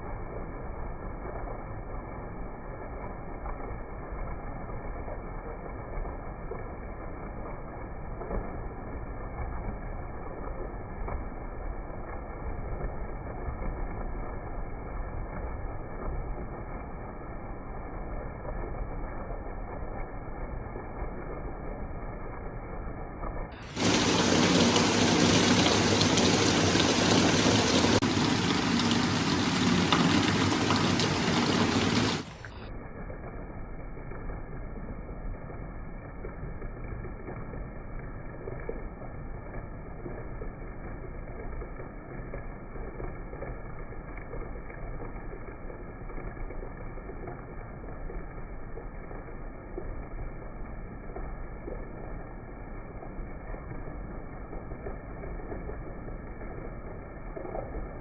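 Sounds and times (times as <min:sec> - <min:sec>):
heavy rain hissing: 0:23.6 - 0:32.7.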